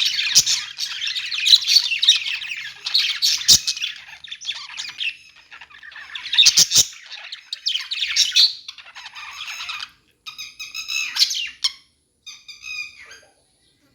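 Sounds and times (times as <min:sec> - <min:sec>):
budgies chattering: 0:00.0 - 0:13.8.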